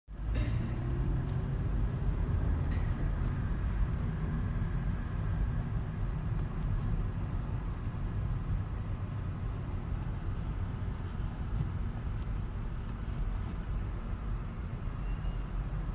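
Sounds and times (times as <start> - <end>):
car engine low rumble: 0.1 - 15.9
faint high-pitched squeal: 15.0 - 15.6.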